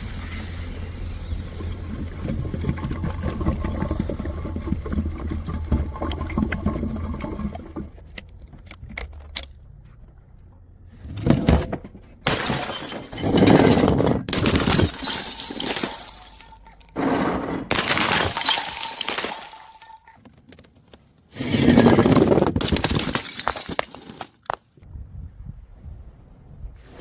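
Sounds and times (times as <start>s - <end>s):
glass bottles smashing on stairs: 12.2s - 20.2s, 21.5s - 24.4s.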